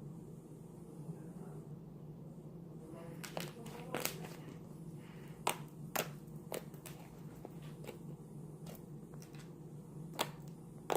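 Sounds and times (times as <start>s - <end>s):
steady low hum: 0.0s - 10.9s
slime clicking and popping: 5.4s - 7.0s, 10.1s - 10.9s.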